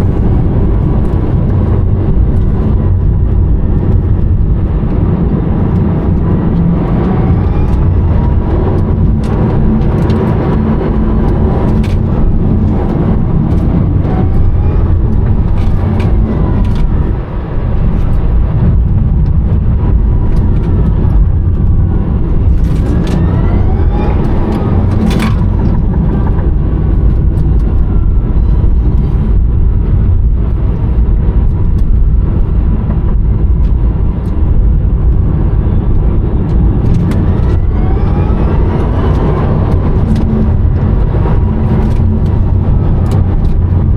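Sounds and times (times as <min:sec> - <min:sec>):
road and tyre rumble: 0:00.0 - 0:43.9
electric motor whine: 0:04.6 - 0:18.7, 0:19.9 - 0:29.4, 0:35.6 - 0:43.9.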